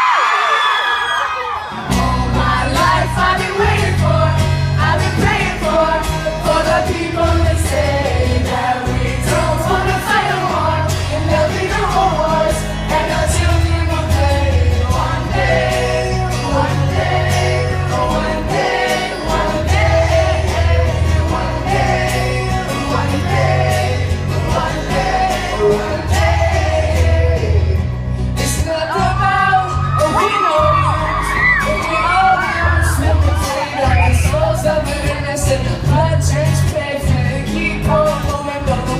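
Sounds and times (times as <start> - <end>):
audience screaming: 0.0 - 3.4, 28.8 - 35.0
acoustic guitar and bass: 1.6 - 38.9
person singing: 1.8 - 38.9.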